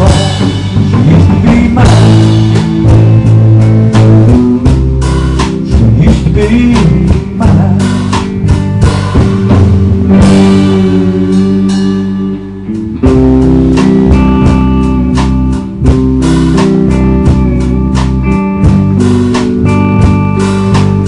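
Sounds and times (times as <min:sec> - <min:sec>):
country band playing: 0:00.0 - 0:21.0.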